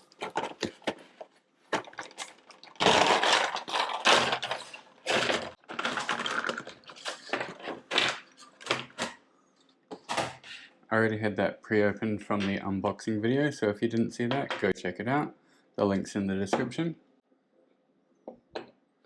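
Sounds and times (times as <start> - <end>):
packaging rustling: 0.0 - 9.2.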